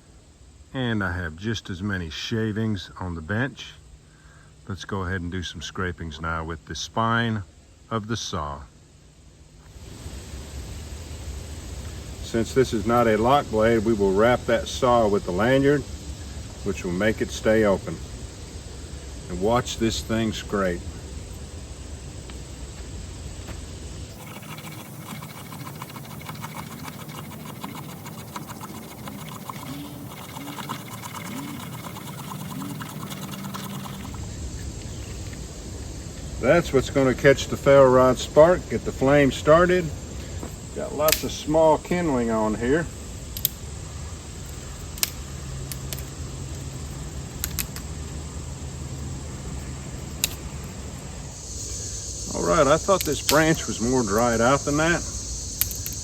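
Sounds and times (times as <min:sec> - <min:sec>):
steady low hum: 0:00.0 - 0:56.0
knife rasping wood: 0:24.1 - 0:34.2
sticks clicking and cracking: 0:47.4 - 0:47.9.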